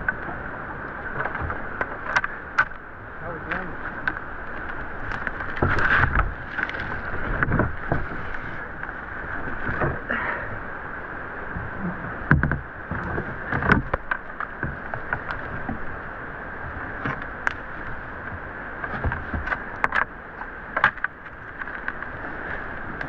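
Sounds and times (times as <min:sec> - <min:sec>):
whitewater river rushing: 0:00.0 - 0:23.0
kayaking gear knocking: 0:01.0 - 0:02.8, 0:03.4 - 0:10.6, 0:12.2 - 0:15.9, 0:16.8 - 0:22.1.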